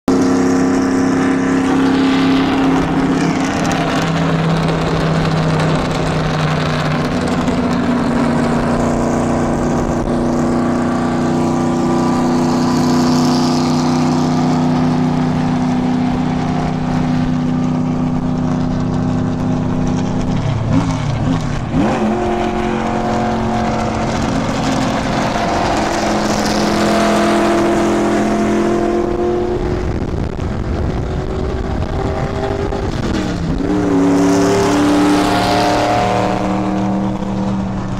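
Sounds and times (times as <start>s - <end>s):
race car engine running: 0.1s - 37.9s.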